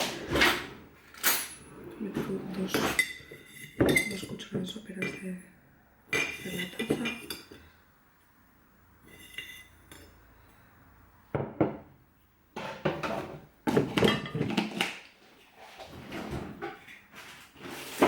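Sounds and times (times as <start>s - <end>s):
kitchenware clatter: 0.0s - 5.2s, 6.1s - 7.8s, 12.6s - 18.0s.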